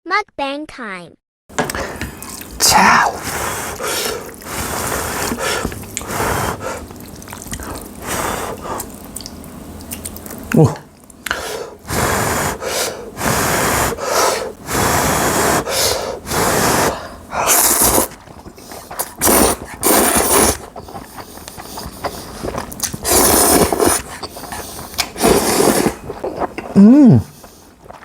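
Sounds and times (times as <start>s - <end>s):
person slurping noodles: 1.7s - 9.0s, 10.6s - 28.0s.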